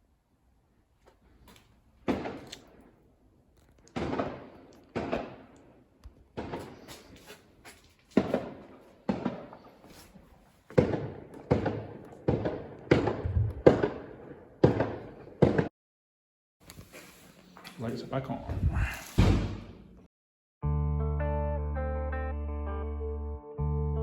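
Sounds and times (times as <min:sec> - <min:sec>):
sharp echoing bangs: 0:02.0 - 0:02.8, 0:03.9 - 0:06.9, 0:08.2 - 0:09.9, 0:10.7 - 0:15.7.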